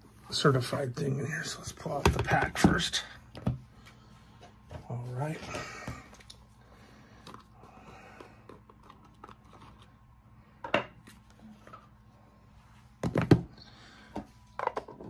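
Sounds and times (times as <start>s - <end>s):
card packaging rustling: 8.5s - 10.1s.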